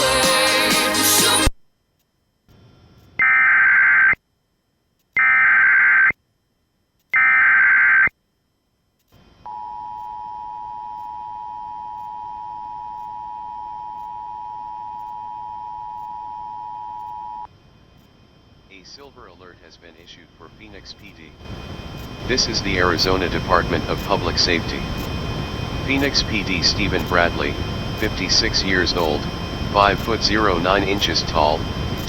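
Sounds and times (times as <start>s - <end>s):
buzzing warble data bursts: 3.1s - 4.2s, 5.2s - 6.2s, 7.1s - 8.1s.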